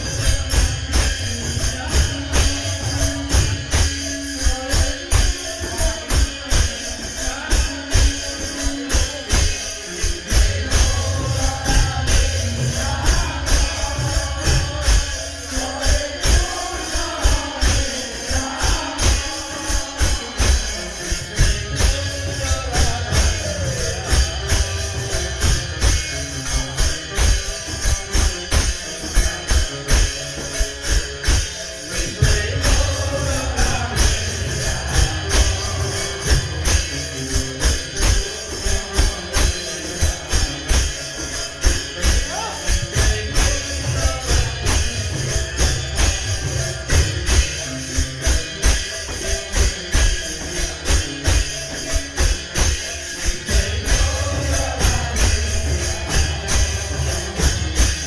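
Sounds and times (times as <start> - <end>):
drum beats: 0.0 - 58.0
jingling hand percussion: 0.0 - 58.0.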